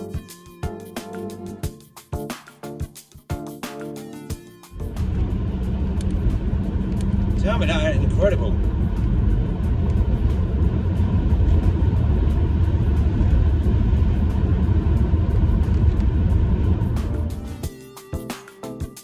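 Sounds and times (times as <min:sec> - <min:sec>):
car interior road and engine rumble: 0:04.8 - 0:17.6.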